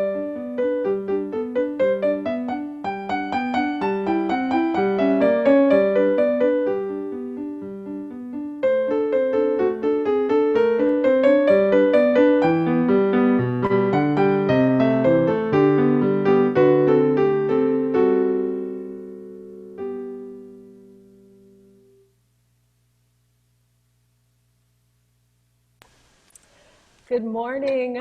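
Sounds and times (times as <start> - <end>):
solo piano music: 0.0 - 22.2.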